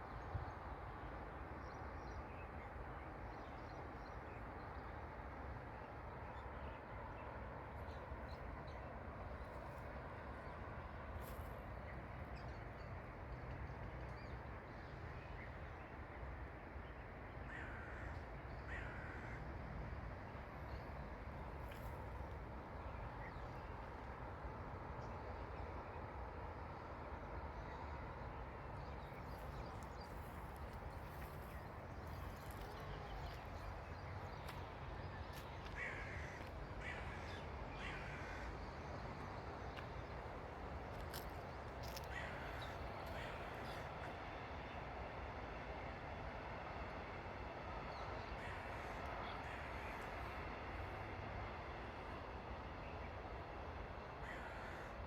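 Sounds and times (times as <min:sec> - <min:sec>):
crows cawing: 0:18.7 - 0:19.4, 0:35.7 - 0:38.5, 0:42.1 - 0:43.6, 0:54.2 - 0:54.9.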